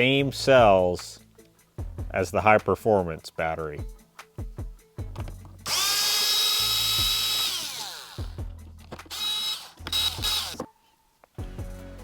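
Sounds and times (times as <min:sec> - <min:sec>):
background music with steady beat: 0:00.0 - 0:12.0
cordless drill motor whining: 0:05.6 - 0:08.4, 0:09.1 - 0:10.7.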